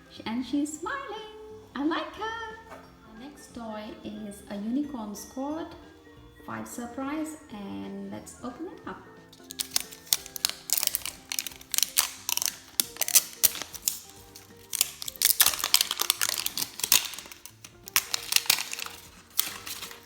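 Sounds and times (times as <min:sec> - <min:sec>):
plastic packaging crinkling: 0:09.4 - 0:20.0.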